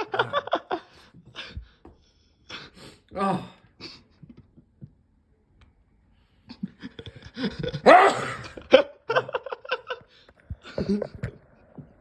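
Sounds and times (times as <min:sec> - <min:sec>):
elderly man sneezing loudly: 0:07.8 - 0:08.6.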